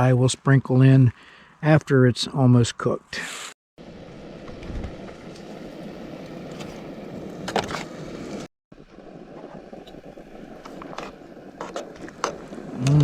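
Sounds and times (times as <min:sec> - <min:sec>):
camp stove hissing: 0:03.8 - 0:13.0.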